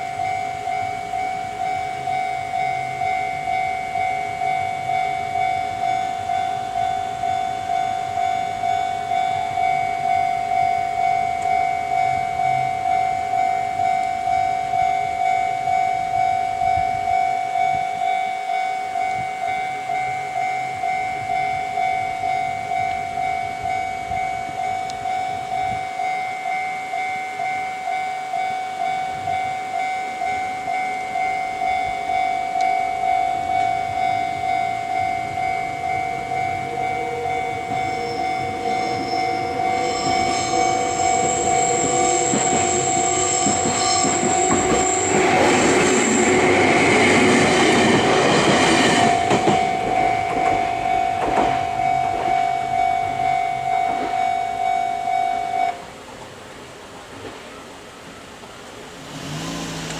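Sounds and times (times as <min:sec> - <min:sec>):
level crossing warning bell: 0:00.0 - 0:56.1
electric train running noise: 0:00.0 - 0:59.9
high whining tones: 0:26.9 - 0:55.8.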